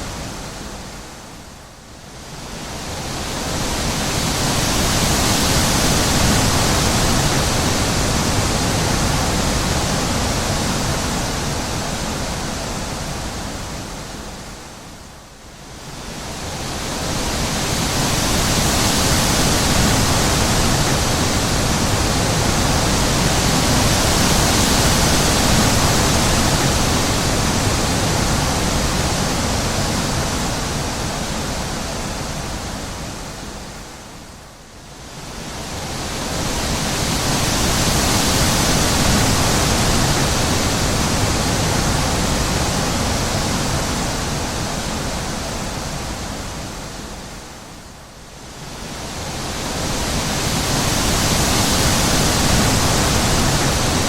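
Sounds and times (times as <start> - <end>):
wind blowing in gusts: 0.0 - 54.0.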